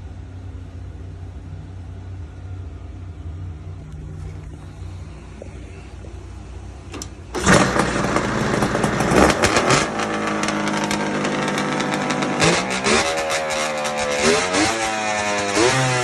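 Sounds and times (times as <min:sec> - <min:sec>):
snowmobile two-stroke engine: 0:07.3 - 0:16.0.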